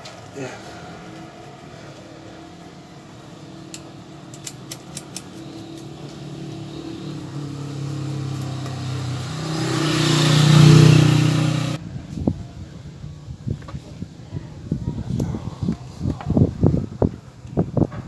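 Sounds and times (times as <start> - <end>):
vehicle engine droning: 0.0 - 13.4
light sharp clicks: 3.7 - 5.9.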